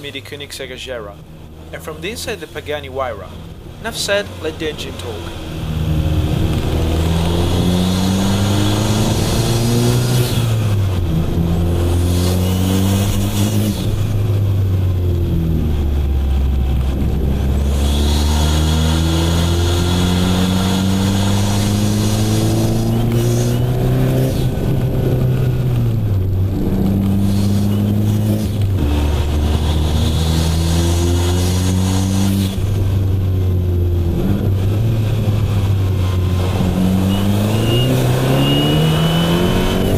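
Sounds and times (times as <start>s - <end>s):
car engine accelerating: 0.0s - 39.9s
turbocharger whistling: 11.5s - 14.0s, 15.9s - 24.7s, 27.0s - 28.6s, 35.9s - 39.9s.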